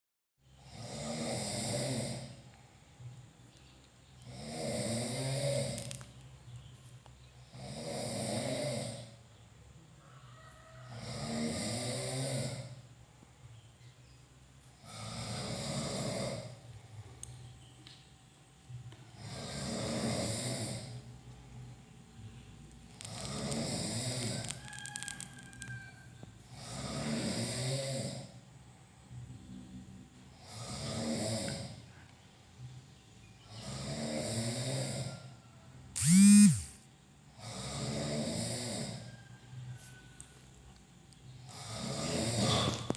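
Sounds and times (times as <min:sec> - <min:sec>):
person snoring: 0:00.6 - 0:02.4, 0:04.2 - 0:06.0, 0:07.5 - 0:09.2, 0:10.9 - 0:12.8, 0:14.8 - 0:16.6, 0:19.2 - 0:21.1, 0:23.0 - 0:25.7, 0:26.5 - 0:28.4, 0:30.3 - 0:31.8, 0:33.5 - 0:35.3, 0:36.0 - 0:36.8, 0:37.4 - 0:39.2, 0:41.5 - 0:42.9.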